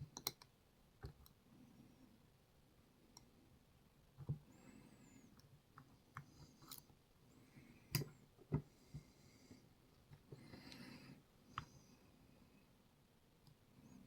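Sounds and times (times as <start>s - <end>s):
light clicks and taps: 7.9s - 9.1s.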